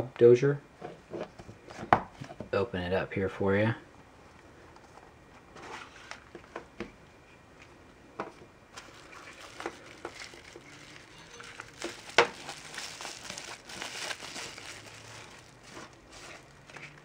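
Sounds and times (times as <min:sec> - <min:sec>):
packaging crinkling and rustling: 0:08.7 - 0:17.0.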